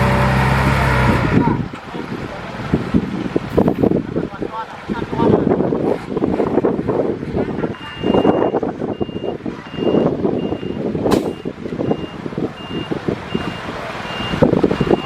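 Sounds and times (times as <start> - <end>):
reversing alarm beeping: 7.9 - 15.0
sharp click: 11.1 - 11.4.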